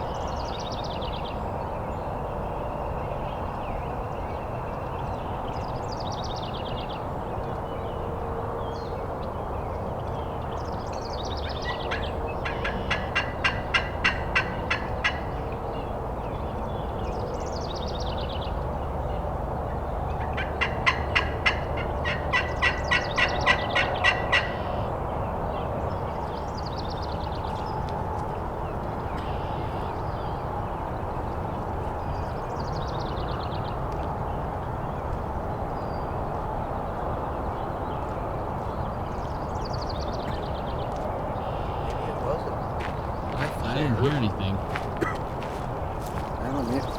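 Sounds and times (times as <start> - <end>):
turkey yelps: 11.6 - 15.2, 20.4 - 24.8.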